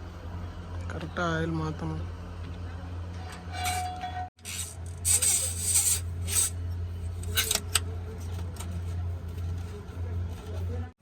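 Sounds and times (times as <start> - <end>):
low machine hum: 0.0 - 11.0
short scraping noises: 3.4 - 6.6.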